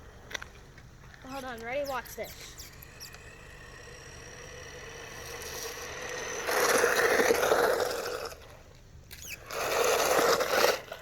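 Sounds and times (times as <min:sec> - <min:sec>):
toy truck motor whining: 0:01.2 - 0:08.5, 0:09.1 - 0:11.0
tyres scraping on grit: 0:05.0 - 0:08.5, 0:09.2 - 0:11.0.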